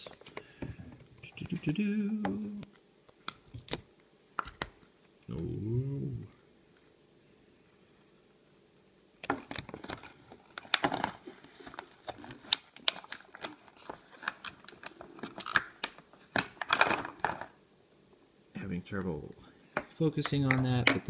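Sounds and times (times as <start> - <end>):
paper crinkling and rustling: 9.3 - 17.5.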